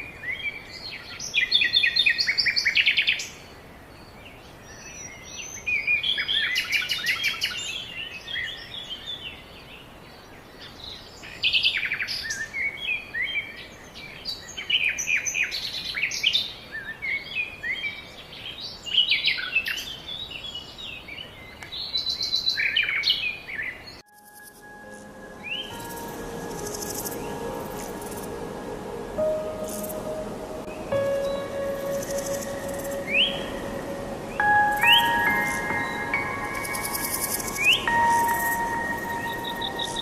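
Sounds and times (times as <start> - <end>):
birds singing and chirping: 10.6 - 40.0.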